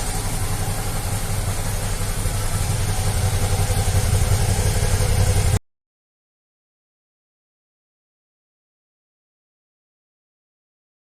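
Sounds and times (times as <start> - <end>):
motorcycle engine idling: 0.0 - 5.6.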